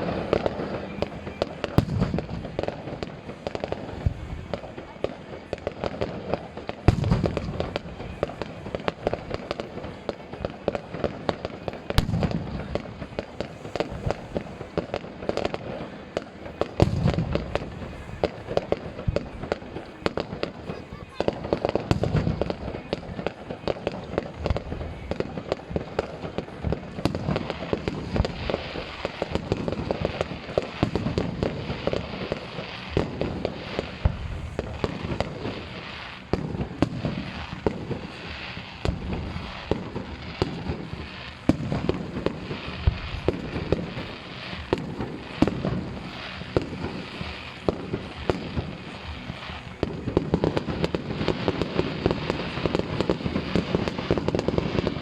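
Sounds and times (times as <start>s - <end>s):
fireworks bangs and crackling pops: 0.0s - 55.0s.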